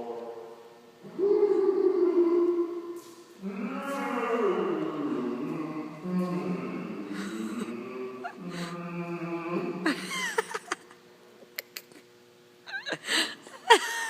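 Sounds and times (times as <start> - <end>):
voice droning low: 0.0 - 10.1.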